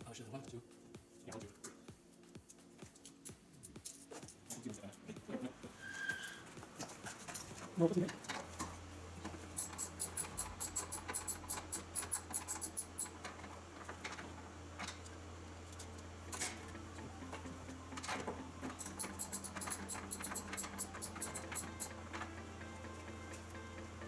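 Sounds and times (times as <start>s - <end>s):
ratchet wrench clicking: 9.6s - 13.2s, 18.7s - 21.9s.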